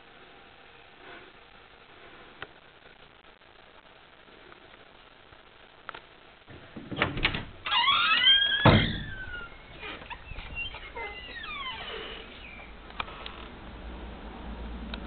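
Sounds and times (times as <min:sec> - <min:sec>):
dogs whining: 0:07.8 - 0:12.7.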